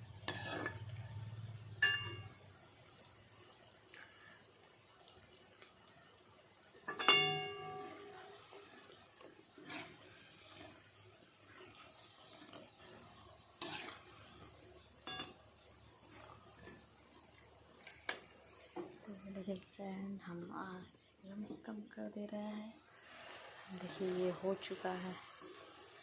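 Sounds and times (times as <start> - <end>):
utensil clanging on metal pot: 1.8 - 2.3, 6.9 - 7.8, 15.0 - 15.4.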